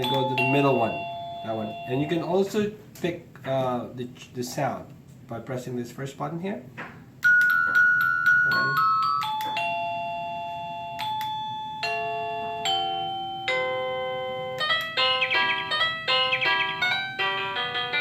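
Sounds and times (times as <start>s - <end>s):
electronic doorbell chime melody: 0.0s - 2.4s, 7.2s - 18.0s.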